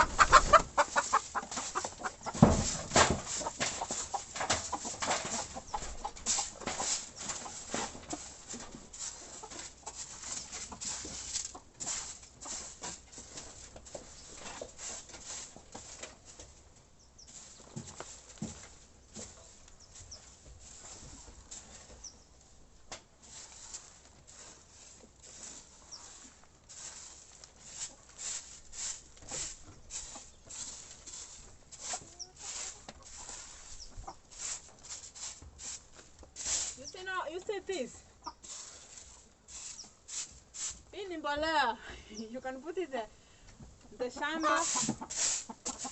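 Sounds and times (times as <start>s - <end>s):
faint chick peeps: 0.0s - 2.4s, 31.8s - 34.3s
scratching and rustling: 0.0s - 37.8s, 38.4s - 40.9s, 44.0s - 45.9s
chickens clucking: 0.0s - 40.5s, 43.5s - 45.9s.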